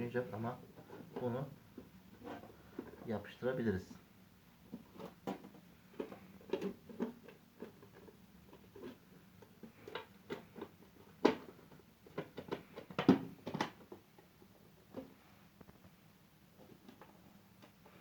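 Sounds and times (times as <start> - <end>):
plastic parts clicking and knocking: 4.7 - 15.8.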